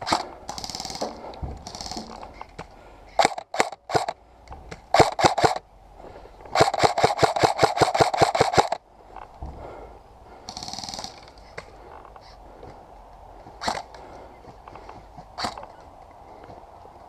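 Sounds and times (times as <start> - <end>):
airsoft gun shots: 3.2 - 4.2, 4.9 - 5.6, 6.6 - 8.8, 13.6 - 13.9.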